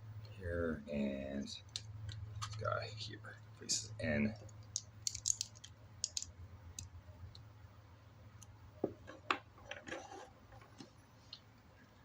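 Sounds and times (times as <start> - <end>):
low steady hum: 0.0 - 12.0
plastic bricks clicking together: 4.5 - 6.9.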